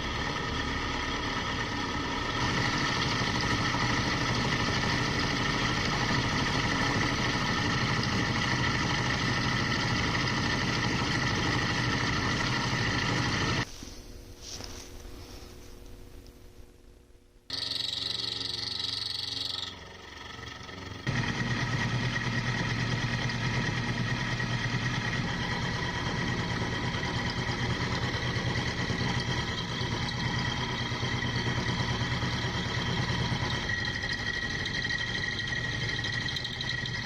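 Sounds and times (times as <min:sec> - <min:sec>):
machine tool motor whine: 0:00.0 - 0:13.7, 0:17.5 - 0:37.0.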